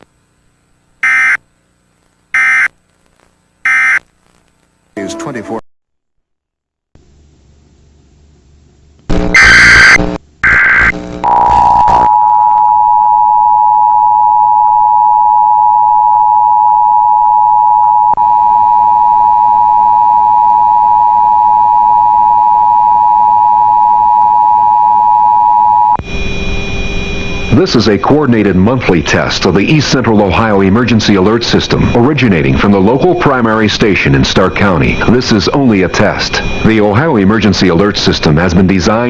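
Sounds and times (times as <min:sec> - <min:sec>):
digital data bursts: 0:09.3 - 0:12.1, 0:26.3 - 0:38.7
two-tone attention signal: 0:32.7 - 0:35.0.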